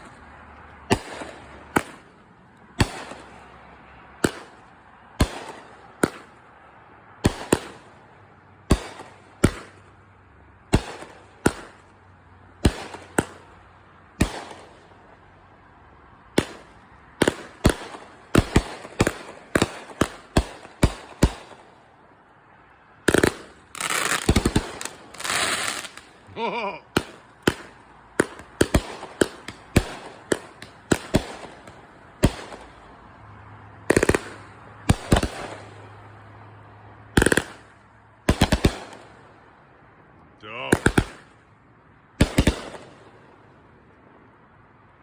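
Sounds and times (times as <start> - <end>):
fireworks crackling volley: 0.0 - 45.0
fireworks bangs: 0.8 - 2.2, 2.8 - 6.4, 7.2 - 8.0, 8.7 - 9.9, 10.7 - 11.8, 12.6 - 13.5, 14.2 - 15.0, 16.3 - 21.8, 23.0 - 33.0, 33.8 - 36.1, 37.1 - 39.2, 40.4 - 41.4, 42.2 - 43.3.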